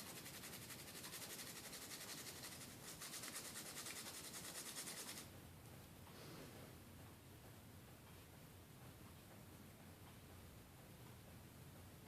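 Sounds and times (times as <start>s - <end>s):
fast scrubbing on circuit board: 0.0s - 5.2s.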